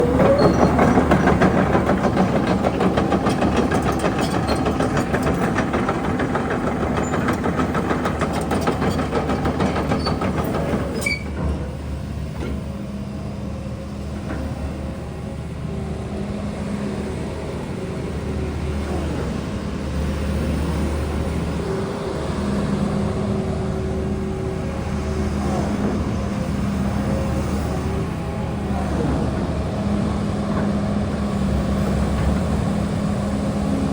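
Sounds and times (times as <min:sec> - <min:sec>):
loud rattling clatter: 0:00.0 - 0:11.5
excavator engine hum: 0:00.0 - 0:33.9.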